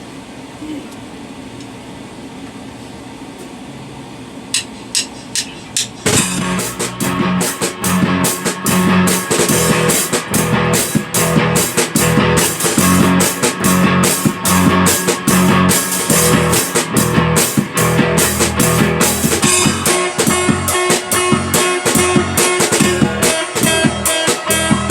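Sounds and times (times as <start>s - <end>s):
rock band playing: 5.4s - 24.9s.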